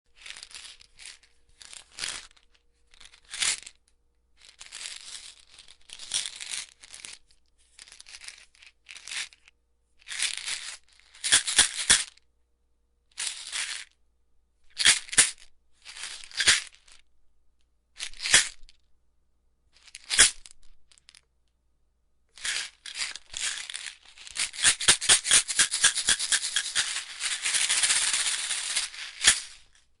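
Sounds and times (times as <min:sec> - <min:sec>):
pills rattling in a bottle: 0:00.1 - 0:03.8, 0:04.4 - 0:12.2, 0:14.8 - 0:17.0, 0:18.0 - 0:18.8, 0:19.8 - 0:21.2, 0:22.4 - 0:30.0.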